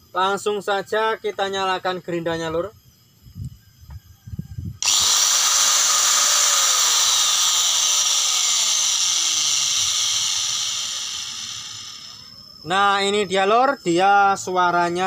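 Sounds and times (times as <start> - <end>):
angle grinder whining: 4.8 - 12.5.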